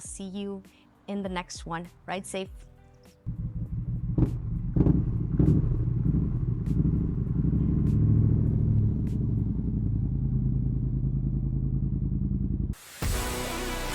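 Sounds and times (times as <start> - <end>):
motorcycle engine running: 3.3 - 13.2.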